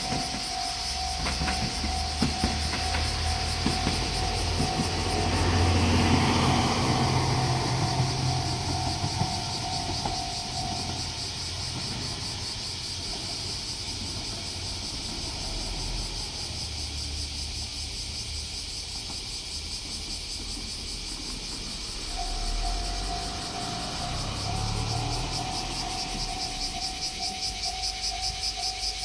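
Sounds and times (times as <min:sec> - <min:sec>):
level crossing warning bell: 0:00.0 - 0:14.3, 0:21.2 - 0:29.0
diesel railcar engine rumbling: 0:00.0 - 0:29.0
insects buzzing: 0:00.0 - 0:29.0.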